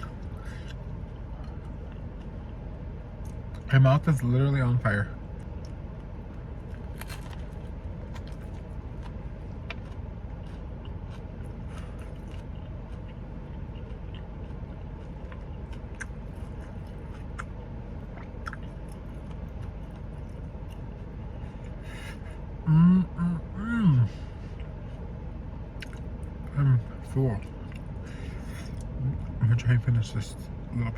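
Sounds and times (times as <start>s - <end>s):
air conditioner humming: 0.0s - 30.9s
chewing food with mouth clicks: 5.3s - 21.8s, 25.7s - 26.4s.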